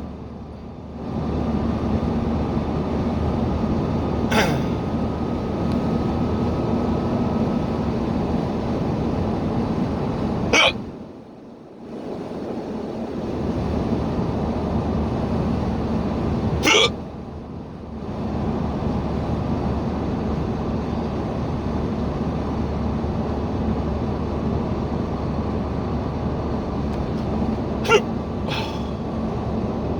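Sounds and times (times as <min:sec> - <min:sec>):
car road and engine noise: 0:00.0 - 0:29.9
person hiccuping: 0:04.3 - 0:04.9, 0:10.6 - 0:10.8, 0:16.6 - 0:17.0, 0:27.8 - 0:29.0.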